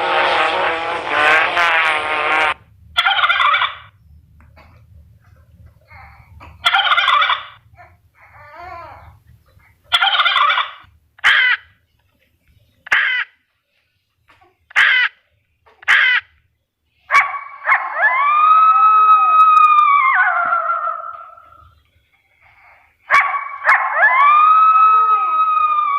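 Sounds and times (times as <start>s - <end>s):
turkey gobbling: 3.0s - 3.9s, 6.6s - 7.6s, 9.9s - 11.6s.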